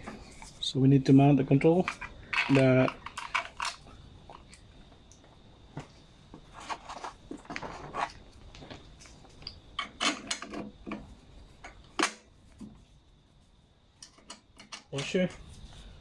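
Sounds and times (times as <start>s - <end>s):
clicks of small metal parts: 1.8s - 3.8s.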